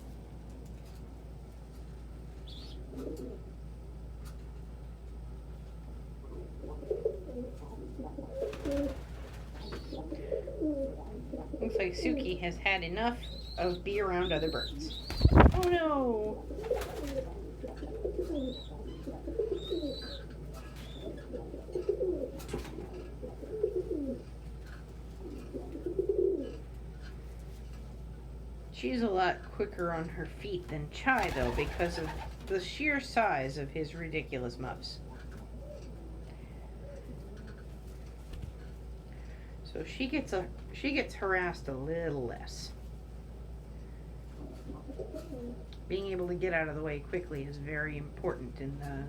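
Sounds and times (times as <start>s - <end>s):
low steady hum: 0.0s - 49.0s
pigeons cooing: 2.5s - 3.6s, 6.2s - 12.4s, 13.1s - 26.7s, 31.2s - 32.4s, 44.3s - 45.7s.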